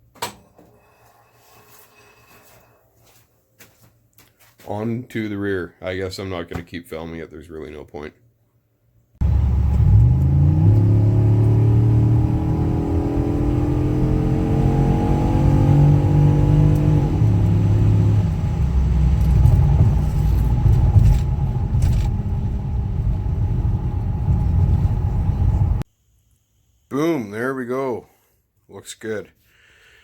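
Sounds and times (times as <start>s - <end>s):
engine accelerating: 9.2s - 25.8s.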